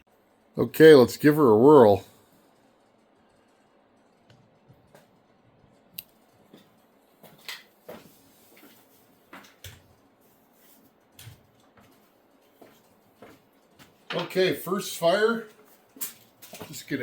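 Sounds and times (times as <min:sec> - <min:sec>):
faint knocks and clicks: 0:02.9 - 0:07.7.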